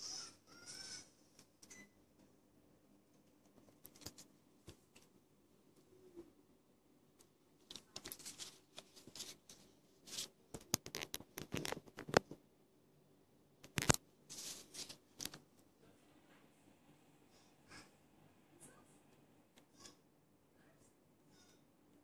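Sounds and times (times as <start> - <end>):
faint steady hum: 0.0 - 22.0
rustling and scraping: 7.6 - 12.4, 13.7 - 15.5.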